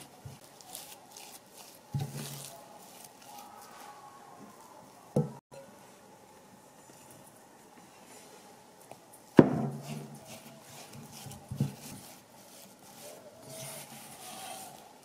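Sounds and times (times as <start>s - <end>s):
faint scraping: 9.7s - 15.0s.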